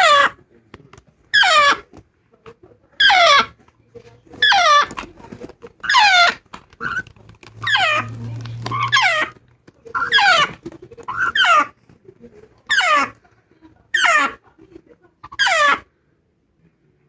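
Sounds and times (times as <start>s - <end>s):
parrot squawking: 0.0s - 0.4s, 1.3s - 1.9s, 3.0s - 3.6s, 4.4s - 5.2s, 5.8s - 11.8s, 12.6s - 13.2s, 13.9s - 14.4s, 15.2s - 15.9s.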